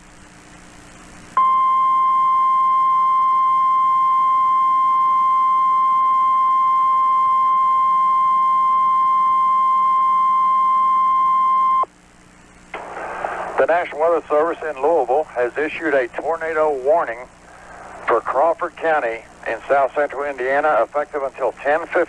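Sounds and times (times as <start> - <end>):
steady high alarm tone: 1.4 - 11.9
faint hiss: 12.0 - 22.0.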